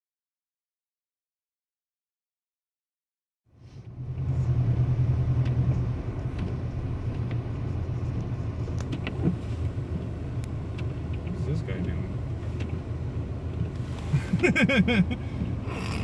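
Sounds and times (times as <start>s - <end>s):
car engine droning: 3.5s - 16.0s.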